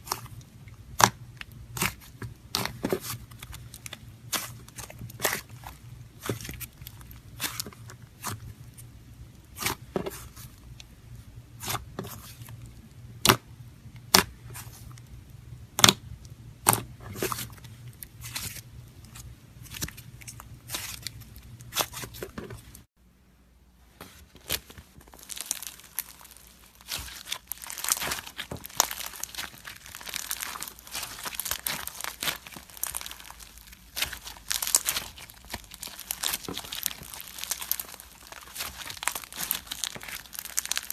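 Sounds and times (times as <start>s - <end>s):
crinkly crackling: 24.2s - 40.9s.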